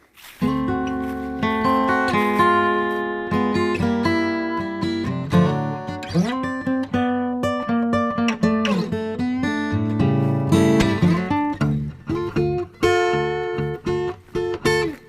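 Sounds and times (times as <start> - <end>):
acoustic guitar music: 0.0 - 15.0.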